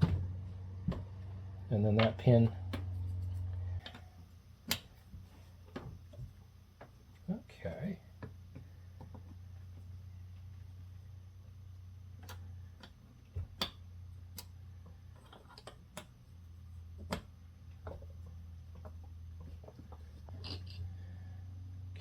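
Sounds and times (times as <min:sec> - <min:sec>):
steady low hum: 0:00.0 - 0:22.0
small metal parts clicking: 0:20.3 - 0:20.9.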